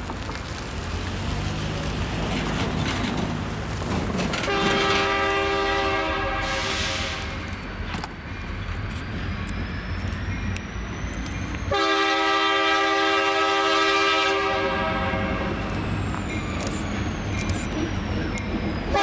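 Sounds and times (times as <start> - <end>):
wheels clicking over rail joints: 0.0 - 5.9, 7.1 - 11.8, 15.0 - 19.0
freight train rumble: 0.0 - 19.0
locomotive air horn chord: 4.4 - 7.4, 11.7 - 15.5.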